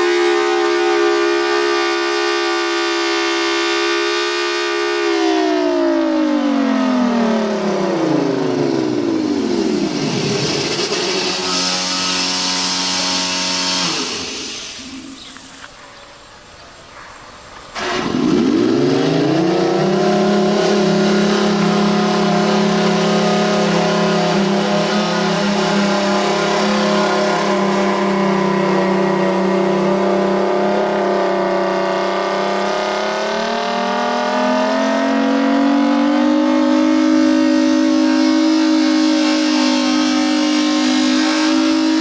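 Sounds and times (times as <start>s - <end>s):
tornado warning siren: 0.0s - 14.3s, 17.8s - 42.0s.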